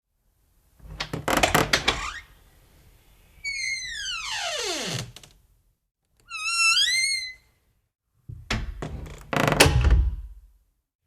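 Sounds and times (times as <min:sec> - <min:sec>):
wooden door creaking on hinges: 0:00.9 - 0:02.3, 0:03.5 - 0:05.4, 0:06.2 - 0:07.5, 0:08.3 - 0:10.3.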